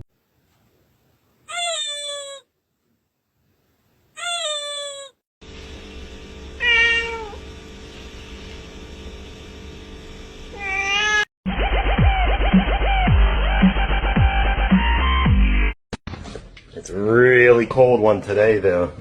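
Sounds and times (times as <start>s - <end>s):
cat meowing: 1.5s - 2.5s, 4.2s - 5.2s, 6.6s - 7.4s, 10.6s - 11.3s.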